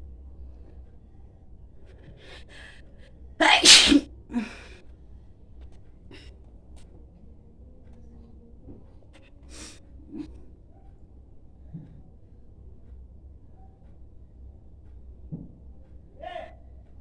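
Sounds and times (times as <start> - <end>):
person sneezing: 3.4 - 4.0.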